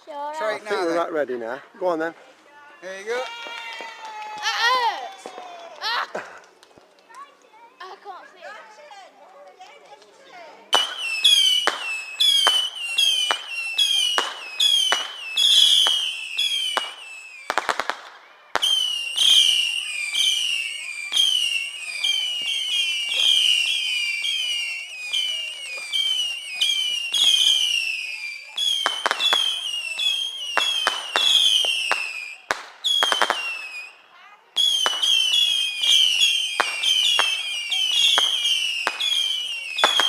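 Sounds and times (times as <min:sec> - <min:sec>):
crackling firework bursts: 0:10.6 - 0:40.0
whistling fireworks: 0:10.7 - 0:40.0.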